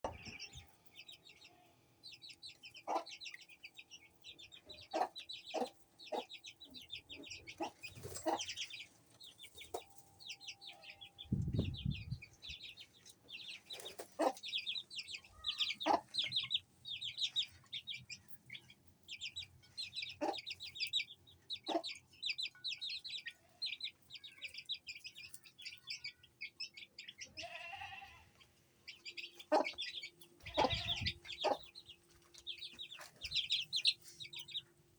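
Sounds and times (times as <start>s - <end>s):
hen clucking: 0.0s - 0.7s, 2.3s - 3.5s, 4.5s - 8.8s, 10.7s - 24.7s, 27.0s - 34.6s
chicks peeping: 0.0s - 34.9s.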